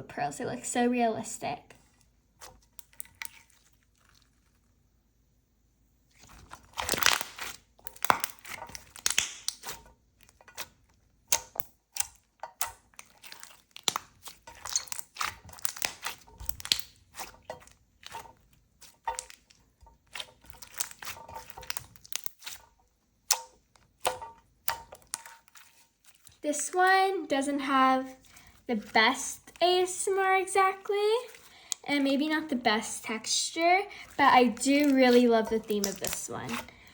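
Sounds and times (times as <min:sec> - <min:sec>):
slime crackling and tearing: 0:06.1 - 0:22.6, 0:23.2 - 0:26.4, 0:31.1 - 0:32.8, 0:33.9 - 0:36.8.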